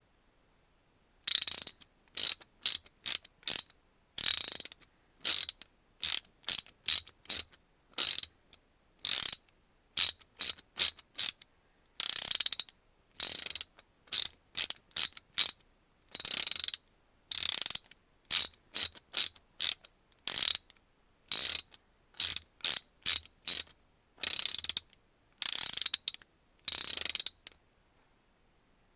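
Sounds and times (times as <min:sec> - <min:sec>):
ratchet pawl clicking: 0:01.3 - 0:03.6, 0:04.2 - 0:06.2, 0:08.0 - 0:08.3, 0:13.2 - 0:15.5, 0:16.2 - 0:20.6, 0:21.3 - 0:24.8, 0:25.4 - 0:27.4.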